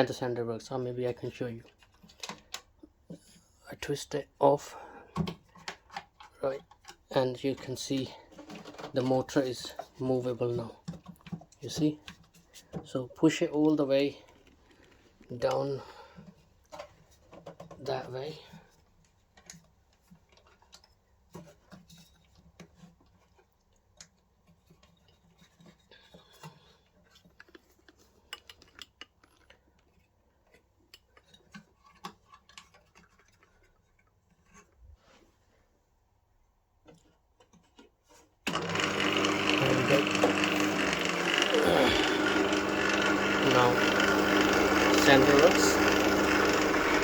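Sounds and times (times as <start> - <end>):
bandsaw motor humming: 38.5 - 47.0.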